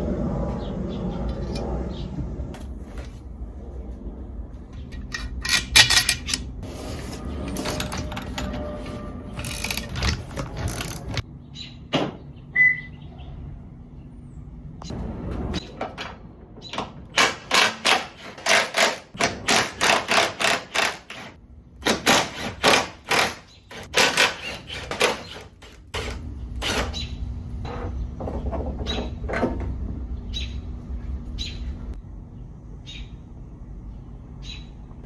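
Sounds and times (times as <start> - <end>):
low steady hum: 25.6 - 35.0.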